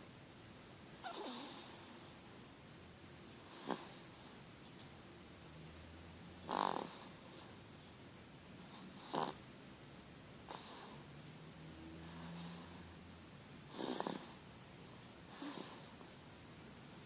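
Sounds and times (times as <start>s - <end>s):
baby snoring: 1.0s - 1.9s, 3.5s - 4.2s, 6.4s - 7.5s, 8.7s - 9.4s, 10.5s - 11.1s, 11.9s - 13.0s, 13.7s - 14.4s, 15.3s - 16.0s.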